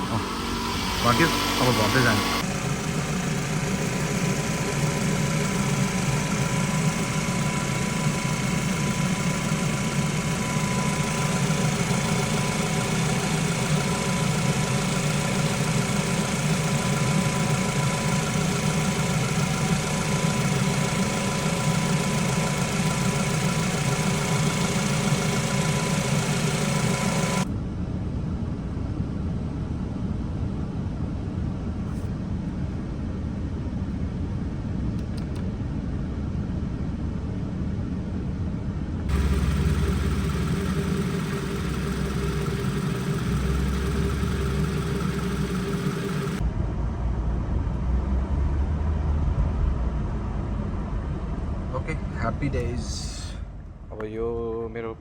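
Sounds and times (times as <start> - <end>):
car engine idling: 0.0 - 27.5, 39.1 - 46.4.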